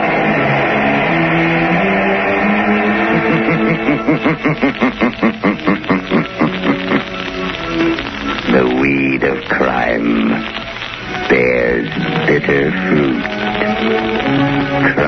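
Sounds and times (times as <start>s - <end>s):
theme music with held chords: 6.0s - 15.0s.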